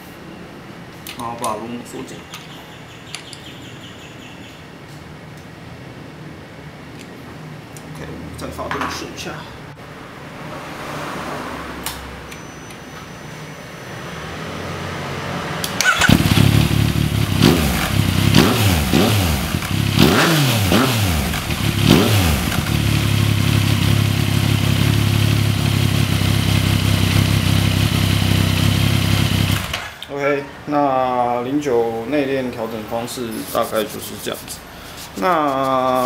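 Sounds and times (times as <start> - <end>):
motorcycle engine revving and idling: 14.8 - 30.0.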